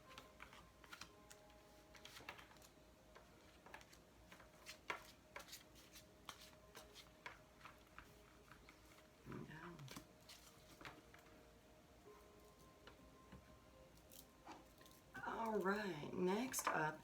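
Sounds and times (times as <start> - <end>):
cards being shuffled: 0.0 - 11.4.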